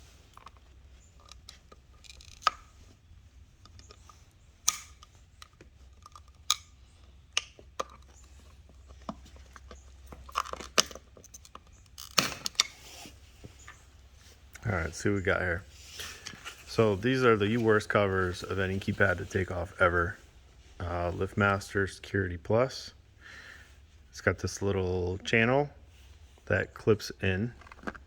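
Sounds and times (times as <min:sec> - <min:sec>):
small hard objects clicking: 0:03.6 - 0:12.7.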